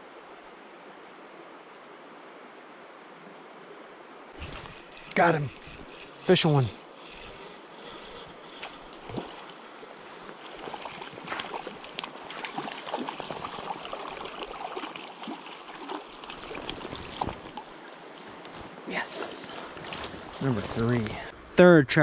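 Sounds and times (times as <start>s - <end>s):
creek water gurgling: 4.3s - 21.3s
small water splashes: 4.3s - 21.3s.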